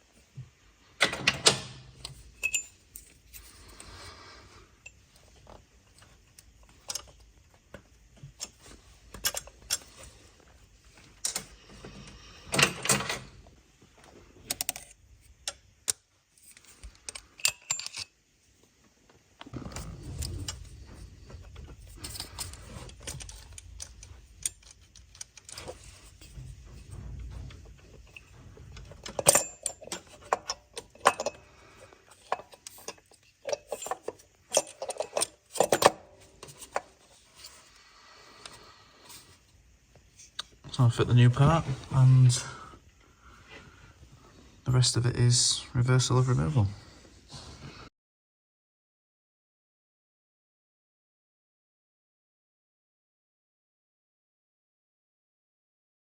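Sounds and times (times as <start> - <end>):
metal parts clinking: 2.1 - 3.6, 16.4 - 18.2, 21.4 - 37.6.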